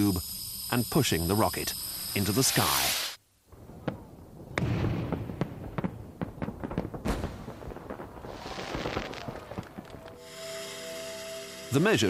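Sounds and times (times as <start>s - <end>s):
rushing hiss: 0.0s - 3.2s, 10.2s - 12.0s
fireworks bangs and crackles: 2.4s - 10.4s.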